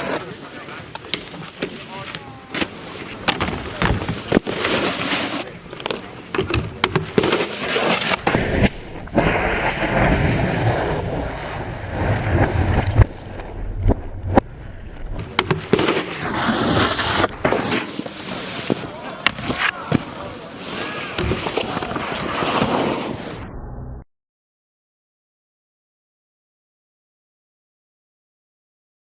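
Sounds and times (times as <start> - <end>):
snowboards scraping on rails: 0.0 - 13.1, 15.2 - 23.4.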